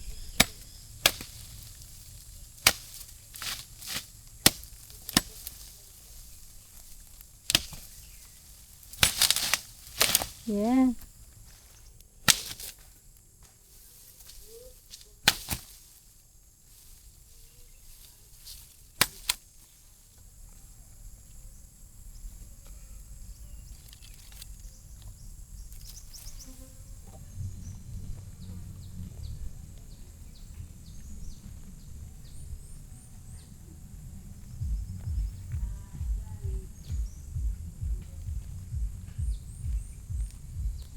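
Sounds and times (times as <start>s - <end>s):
faint high chirps: 0.0s - 8.6s
low uneven rumble: 0.0s - 8.9s, 24.7s - 40.9s.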